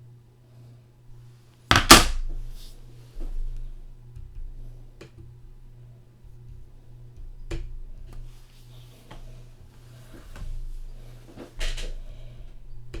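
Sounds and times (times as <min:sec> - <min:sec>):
low electrical hum: 0:00.0 - 0:13.0
objects knocking and clattering: 0:01.7 - 0:02.2.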